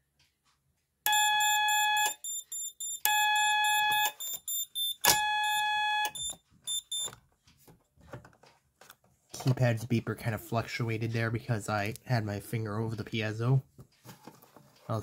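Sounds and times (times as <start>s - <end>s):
alarm keypad beeps: 1.1s - 7.2s.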